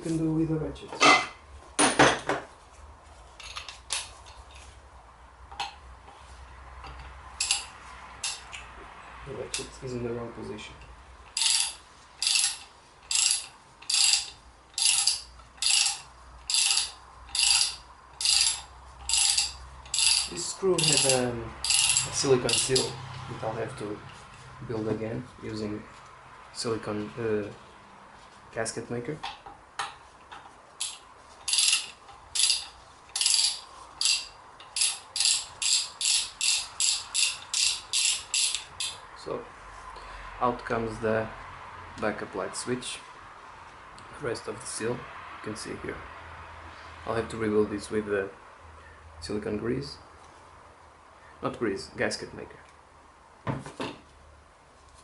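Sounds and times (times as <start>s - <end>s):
socket ratchet clicking: 6.9s - 8.7s, 11.3s - 23.0s, 30.8s - 39.0s.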